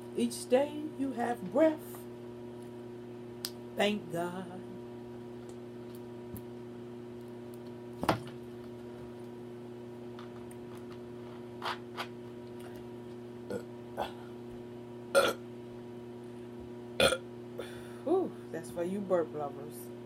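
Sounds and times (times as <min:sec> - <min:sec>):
steady low hum: 0:00.0 - 0:20.0
woman burping: 0:13.5 - 0:14.3, 0:15.1 - 0:15.4, 0:17.0 - 0:17.2.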